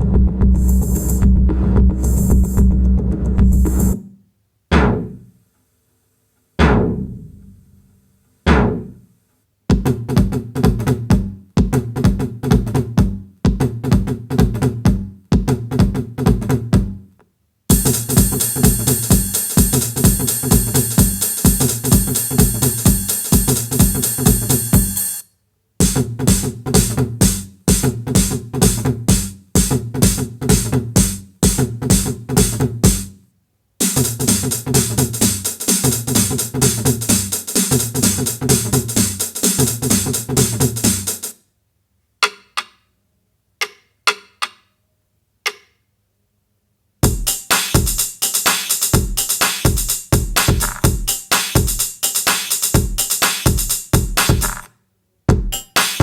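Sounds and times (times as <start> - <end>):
electronic dance music: 0.0 - 4.0, 17.7 - 25.2, 25.8 - 33.1, 33.8 - 41.3, 47.0 - 54.7, 55.4 - 56.0.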